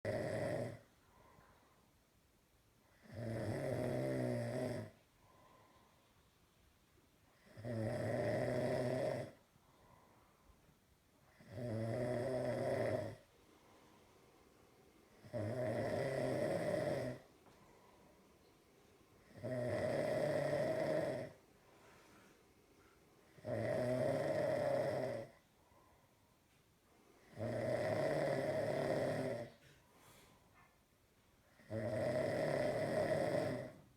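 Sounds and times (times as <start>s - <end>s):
snoring: 0.0s - 0.9s, 2.9s - 5.6s, 7.4s - 10.0s, 11.3s - 13.3s, 15.1s - 17.6s, 19.2s - 21.4s, 23.3s - 25.5s, 27.2s - 30.2s, 31.5s - 33.9s
quiet breathing: 0.1s - 33.9s.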